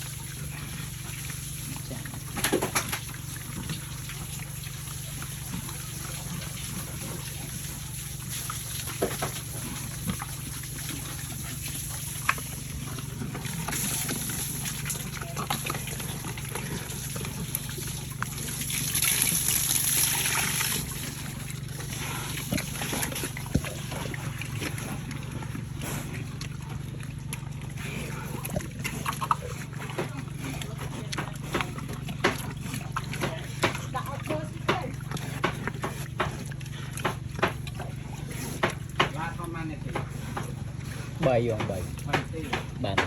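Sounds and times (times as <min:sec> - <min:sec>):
hissing and splashing: 0:00.0 - 0:26.5
pigs slurping wet feed: 0:00.0 - 0:43.0
steady low hum: 0:00.0 - 0:43.0.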